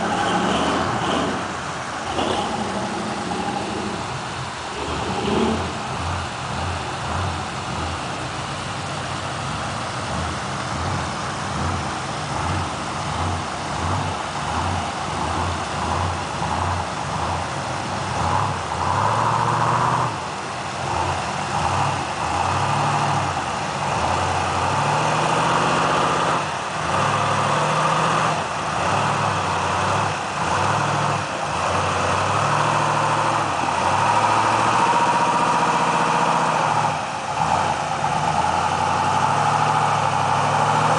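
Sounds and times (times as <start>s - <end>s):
off-road vehicle engine revving: 0.0s - 40.9s.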